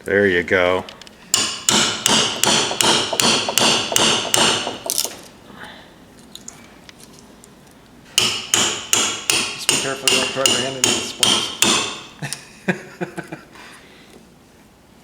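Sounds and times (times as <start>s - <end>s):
hammer blows ringing on chisel: 1.3s - 5.0s, 8.2s - 12.1s.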